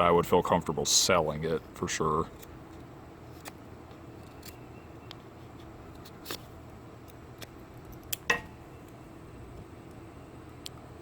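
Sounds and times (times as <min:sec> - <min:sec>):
knife and wood clicks and scrapes: 0:02.3 - 0:08.3.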